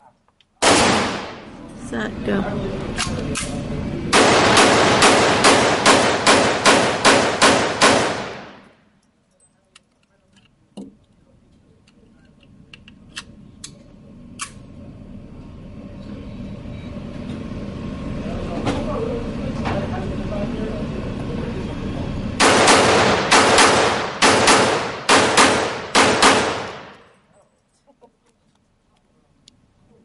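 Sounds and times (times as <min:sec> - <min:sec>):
rapid gunshots: 0:00.6 - 0:01.5, 0:04.1 - 0:08.6, 0:22.4 - 0:27.0.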